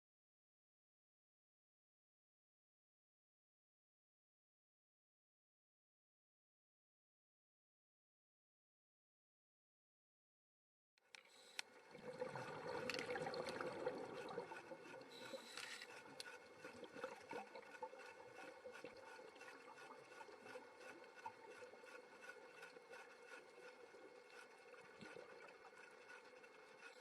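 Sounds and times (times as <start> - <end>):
underwater bubbling: 11.7 - 27.0.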